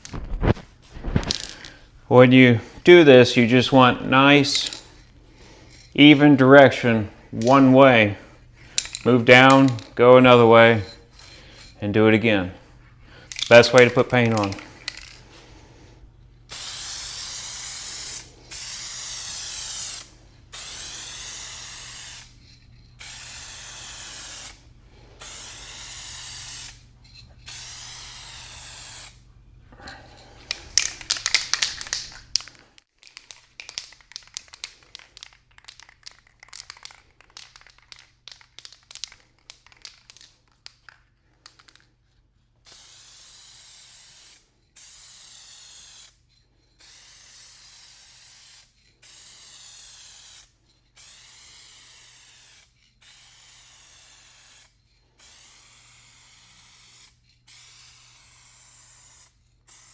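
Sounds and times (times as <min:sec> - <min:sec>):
spray can rattling: 0:01.0 - 0:01.8, 0:04.4 - 0:04.9, 0:08.7 - 0:10.0, 0:13.3 - 0:15.4, 0:16.5 - 0:22.4, 0:23.0 - 0:24.6, 0:25.2 - 0:26.8, 0:27.4 - 0:29.2, 0:30.5 - 0:41.9, 0:42.6 - 0:46.2, 0:46.8 - 0:59.9
spray can hissing: 0:16.5 - 0:22.4, 0:23.0 - 0:24.6, 0:25.2 - 0:26.8, 0:27.4 - 0:29.2, 0:42.7 - 0:46.2, 0:46.8 - 0:59.9.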